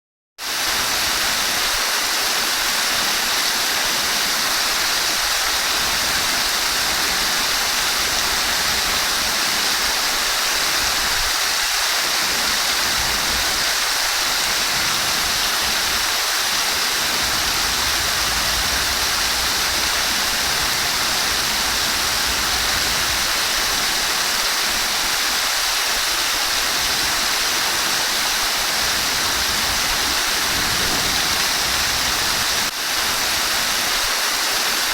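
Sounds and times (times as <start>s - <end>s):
water rushing: 0.4s - 34.9s.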